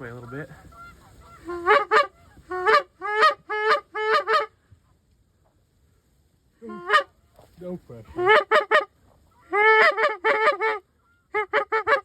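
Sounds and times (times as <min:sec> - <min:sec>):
goose honking: 0:00.1 - 0:04.5, 0:06.6 - 0:07.1, 0:08.1 - 0:12.0.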